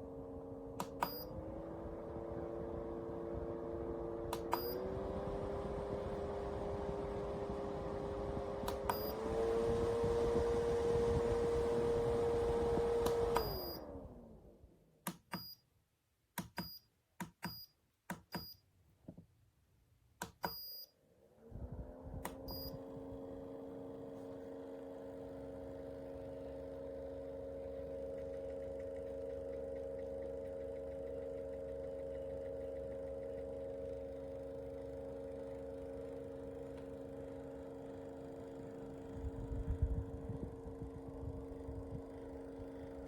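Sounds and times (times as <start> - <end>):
fan motor hum: 0.0 - 15.4, 20.2 - 43.0
button clicks: 16.4 - 18.6, 20.2 - 20.8.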